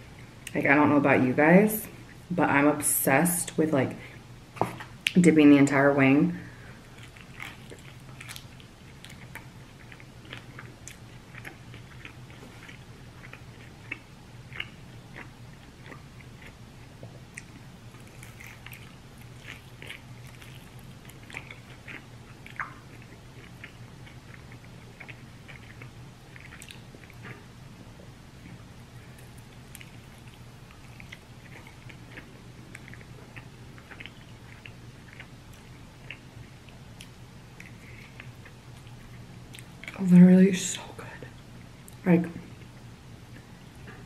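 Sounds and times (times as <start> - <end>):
low steady hum: 0.0 - 44.0
chewing chicken wings: 6.8 - 27.5, 28.4 - 40.0.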